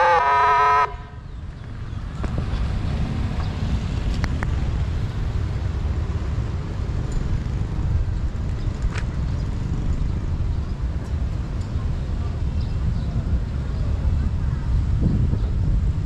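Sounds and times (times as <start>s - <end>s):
road traffic rumble: 0.0s - 16.0s.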